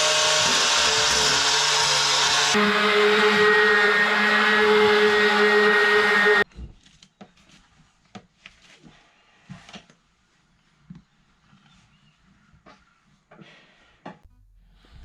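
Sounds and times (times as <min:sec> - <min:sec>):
power tool grinding metal: 0:00.0 - 0:06.4.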